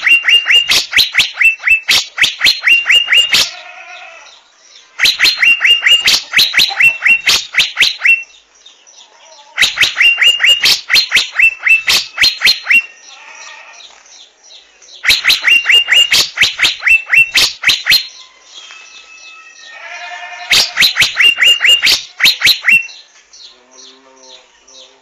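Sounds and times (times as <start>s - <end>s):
bird rapid sharp notes: 0.0s - 3.5s, 5.0s - 8.3s, 9.6s - 13.0s, 15.0s - 18.2s, 20.4s - 23.0s
wavering buzzy bird call: 0.0s - 4.3s, 5.0s - 8.4s, 9.4s - 13.8s, 15.0s - 23.1s.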